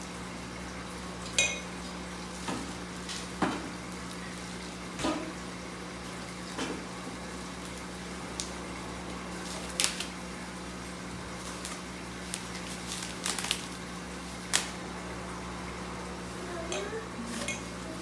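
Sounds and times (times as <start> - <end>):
steady low hum: 5.2 - 18.0.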